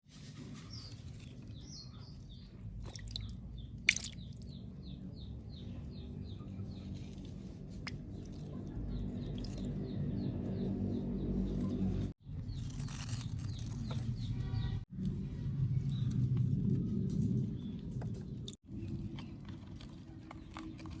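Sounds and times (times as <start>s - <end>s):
small bird chirping: 0.6s - 7.3s, 7.9s - 14.8s
steady low rumble: 14.4s - 19.6s.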